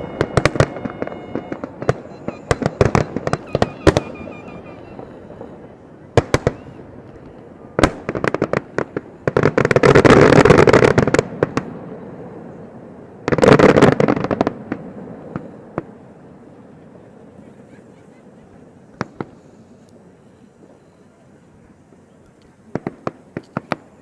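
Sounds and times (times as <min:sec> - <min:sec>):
fireworks popping: 0:00.0 - 0:11.9, 0:13.2 - 0:16.0, 0:18.5 - 0:20.0, 0:22.2 - 0:24.0
fireworks crackling bangs: 0:00.0 - 0:17.4, 0:18.5 - 0:20.8, 0:22.6 - 0:24.0.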